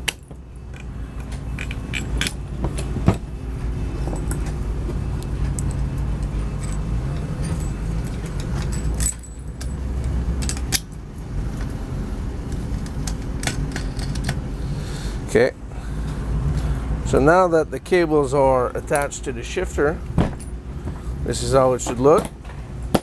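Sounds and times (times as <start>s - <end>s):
small metal hardware clinking: 0.0s - 3.4s, 4.0s - 11.0s, 13.0s - 14.4s, 20.2s - 23.0s
low engine-like rumble: 0.0s - 23.0s.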